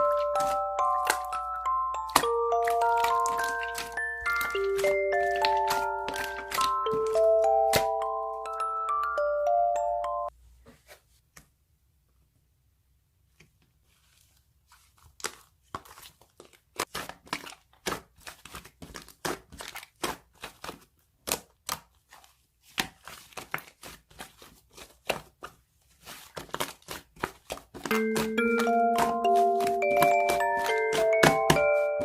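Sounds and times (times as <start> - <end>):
slime squished by hand crackling: 0.0 - 8.7.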